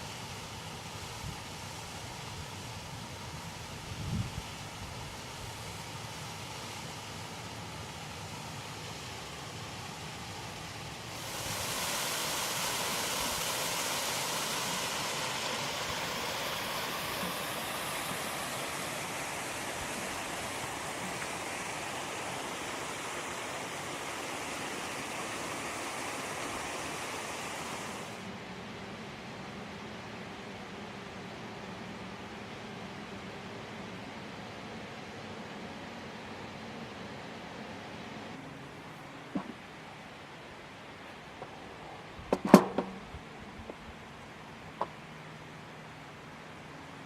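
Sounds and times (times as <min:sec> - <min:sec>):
flowing water rushing: 0:00.0 - 0:31.4.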